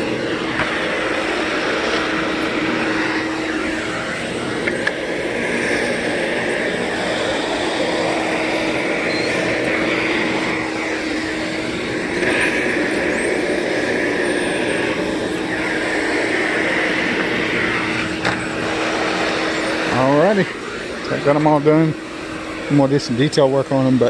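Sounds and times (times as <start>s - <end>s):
vacuum cleaner running: 0.0s - 24.0s.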